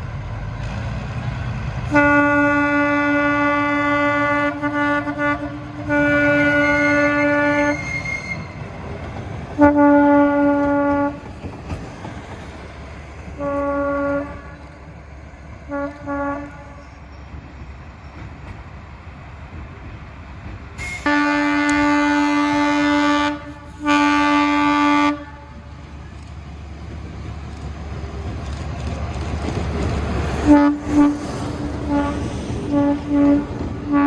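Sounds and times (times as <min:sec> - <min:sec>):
locomotive engine running: 0:00.0 - 0:34.0
diesel locomotive horn blasts: 0:01.8 - 0:08.8, 0:09.6 - 0:11.2, 0:13.4 - 0:14.8, 0:15.7 - 0:17.1, 0:20.8 - 0:25.8, 0:30.4 - 0:34.0.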